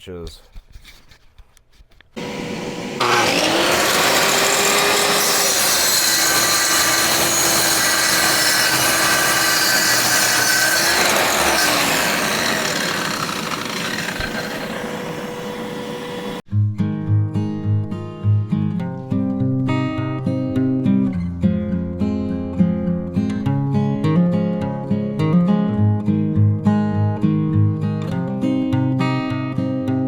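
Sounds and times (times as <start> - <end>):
power saw cutting wood: 2.2 - 16.4.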